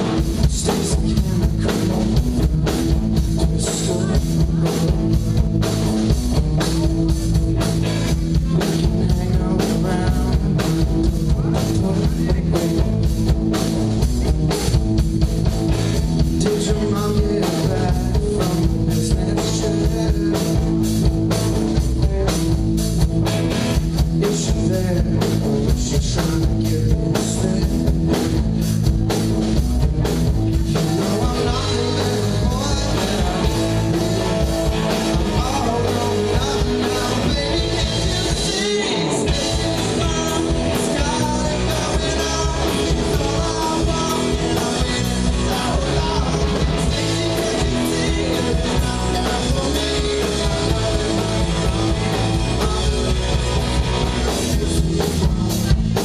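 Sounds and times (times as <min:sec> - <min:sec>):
person singing: 0:00.0 - 0:05.9, 0:08.3 - 0:13.2, 0:16.4 - 0:20.8, 0:29.8 - 0:55.8
drum kit: 0:00.0 - 0:56.0
electric guitar: 0:00.0 - 0:56.0.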